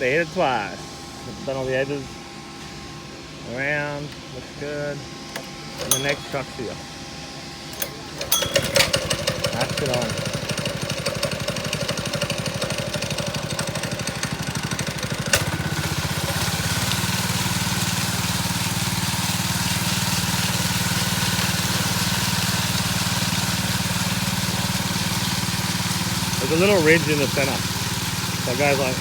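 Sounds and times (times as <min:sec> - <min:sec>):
truck engine running: 0:07.6 - 0:29.0.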